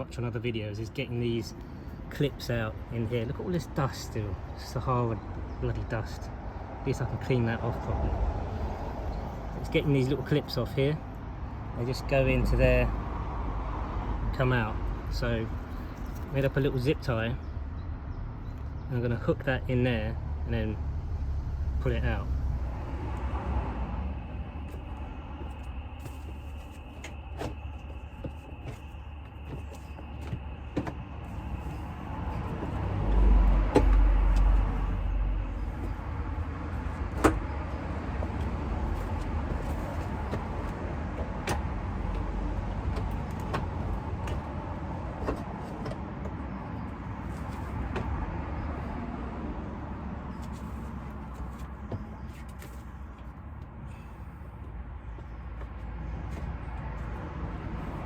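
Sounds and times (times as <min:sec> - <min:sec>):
steady low rumble: 0:21.6 - 0:45.1.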